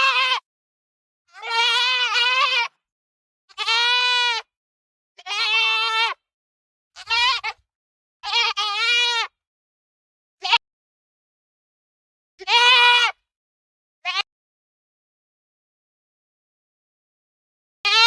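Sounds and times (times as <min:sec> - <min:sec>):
goat bleating: 0:00.0 - 0:00.4, 0:01.3 - 0:02.8, 0:03.5 - 0:04.5, 0:05.2 - 0:06.2, 0:07.0 - 0:07.6, 0:08.2 - 0:09.4, 0:10.4 - 0:10.6, 0:12.4 - 0:13.2, 0:14.0 - 0:14.3.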